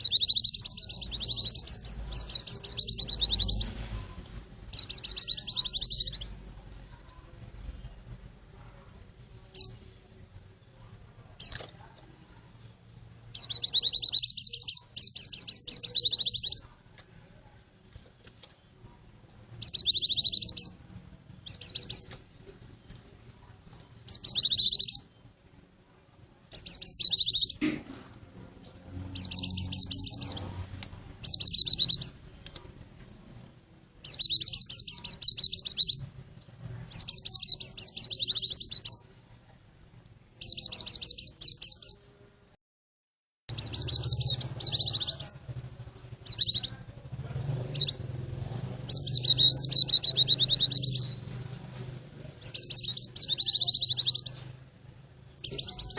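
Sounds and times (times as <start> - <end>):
bird singing high chattering phrases: 0.0 - 6.4, 9.5 - 9.8, 13.3 - 16.7, 19.6 - 20.8, 21.4 - 22.2, 24.0 - 25.1, 26.5 - 27.6, 29.1 - 30.6, 31.2 - 32.5, 34.0 - 36.1, 36.9 - 39.0, 40.4 - 42.0, 43.5 - 45.4, 46.2 - 46.9, 47.5 - 48.2, 48.8 - 51.3, 52.4 - 54.4, 55.4 - 55.9.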